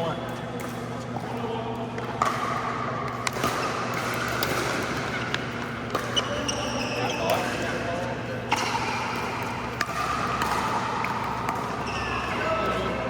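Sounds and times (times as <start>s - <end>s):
steady low hum: 0.0s - 13.0s
pickleballs popping off paddles: 2.0s - 6.4s, 8.5s - 12.6s.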